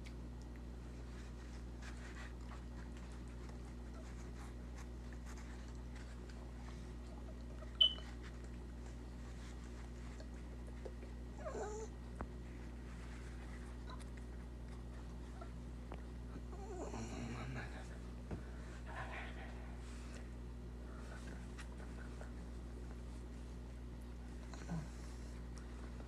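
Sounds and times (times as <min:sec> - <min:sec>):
steady low hum: 0:00.0 - 0:26.0
rat squeak: 0:07.8 - 0:08.0.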